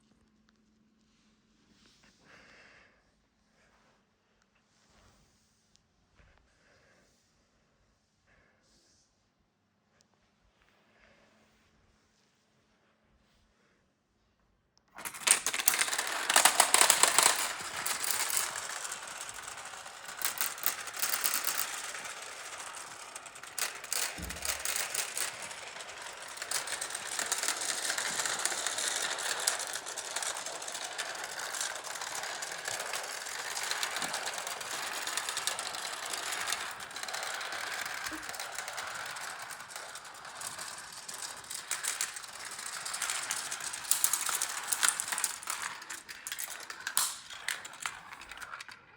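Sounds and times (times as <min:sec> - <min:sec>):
marbles rolling on plastic track: 0:15.0 - 0:48.9.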